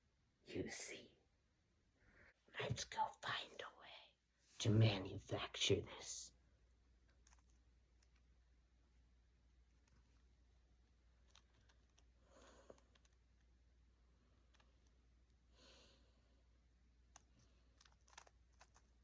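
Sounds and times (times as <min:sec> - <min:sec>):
breathy sounds: 0:12.2 - 0:13.2.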